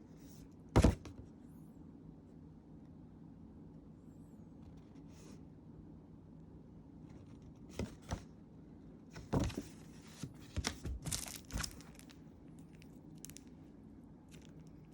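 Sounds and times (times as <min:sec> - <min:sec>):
packaging rustling and crinkling: 0:09.4 - 0:13.5.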